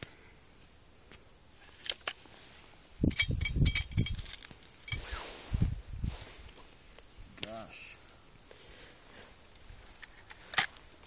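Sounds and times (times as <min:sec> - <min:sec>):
air rifle metallic clicks: 0:10.0 - 0:10.8.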